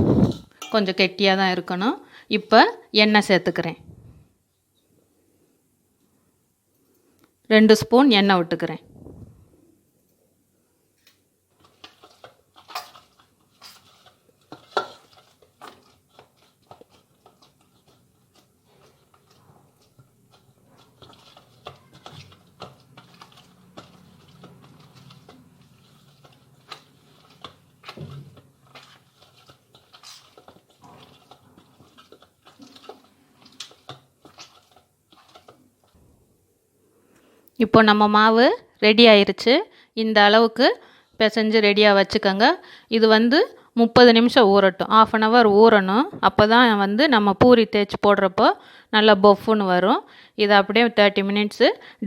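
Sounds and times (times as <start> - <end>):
hands kneading dough: 11.5 - 36.0.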